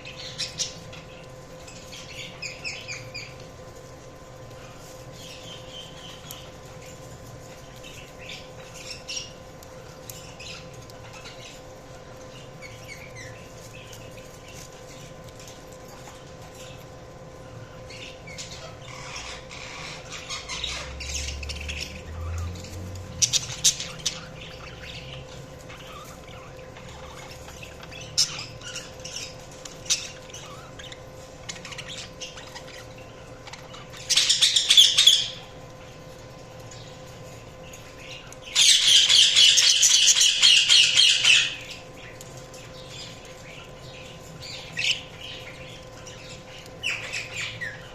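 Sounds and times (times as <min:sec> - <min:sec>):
faint steady hum: 0:00.0 - 0:47.9
rapid bird chatter: 0:00.0 - 0:47.9
budgerigars chirping: 0:17.9 - 0:35.5, 0:38.0 - 0:47.9.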